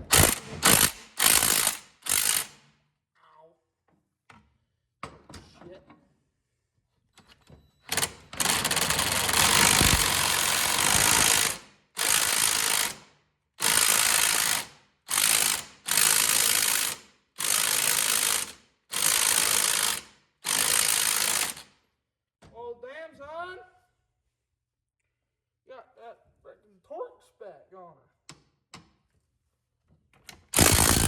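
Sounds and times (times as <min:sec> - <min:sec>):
socket ratchet clicking: 0:30.3 - 0:31.0.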